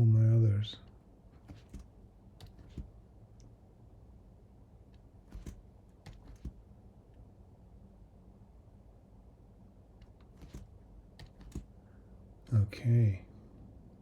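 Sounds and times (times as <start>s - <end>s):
low steady hum: 0.0s - 14.0s
mouse and keyboard clicks: 1.4s - 3.5s, 5.3s - 6.6s, 10.0s - 11.8s.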